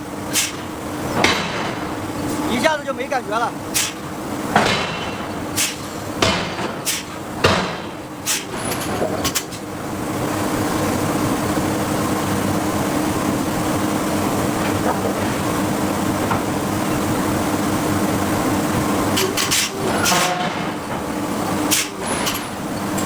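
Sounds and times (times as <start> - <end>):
machinery hum: 0.0 - 23.0
forging hammer striking steel: 0.3 - 2.8, 3.7 - 9.6, 19.1 - 23.0.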